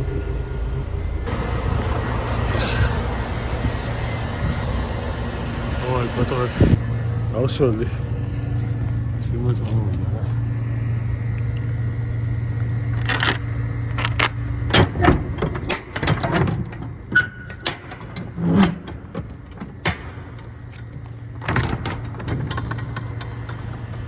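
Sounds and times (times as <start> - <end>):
truck engine idling: 0.0 - 24.0
clicks knocks and rattles: 12.9 - 24.0.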